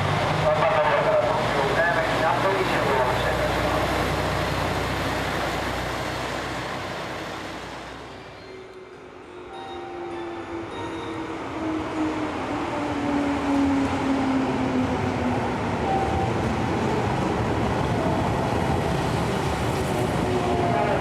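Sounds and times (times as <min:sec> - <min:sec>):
train interior rumble: 0:00.0 - 0:09.2, 0:10.3 - 0:21.0.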